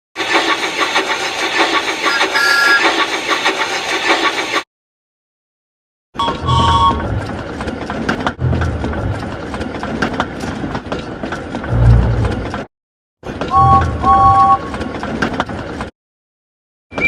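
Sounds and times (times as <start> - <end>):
train wheels clicking on rails: 0.2 - 4.6
steam train whistle toot: 2.1 - 2.8, 13.5 - 14.7
low rumbling beats: 8.4 - 9.4, 11.7 - 12.6, 13.6 - 14.6.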